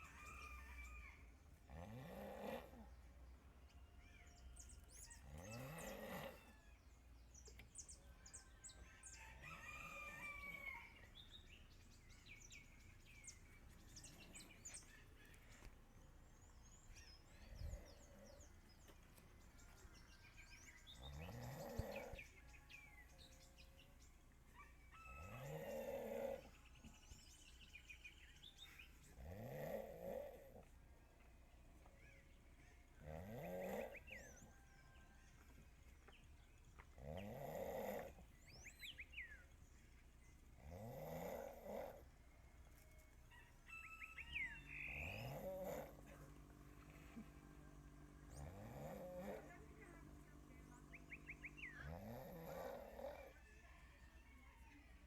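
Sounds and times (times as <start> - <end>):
man snoring over phone: 1.7 - 2.9, 5.4 - 6.5, 21.0 - 22.2, 25.3 - 26.5, 29.2 - 30.6, 33.0 - 34.2, 37.0 - 38.2, 40.6 - 42.0, 45.0 - 46.4, 48.3 - 49.5, 51.8 - 53.3.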